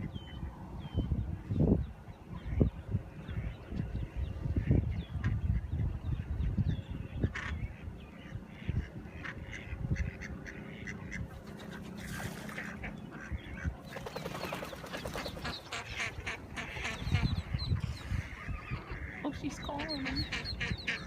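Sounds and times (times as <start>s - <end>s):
ducklings peeping: 0.0s - 21.0s
duck quacking: 8.5s - 11.3s, 15.2s - 21.0s.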